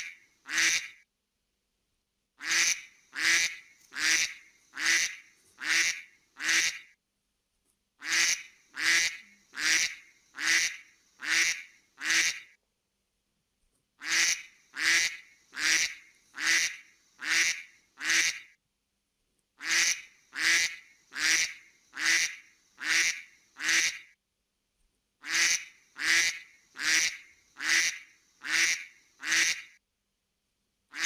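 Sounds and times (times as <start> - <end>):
duck quacking: 0.0 - 1.0, 2.4 - 6.9, 8.0 - 12.5, 14.0 - 18.4, 19.6 - 24.1, 25.2 - 29.8.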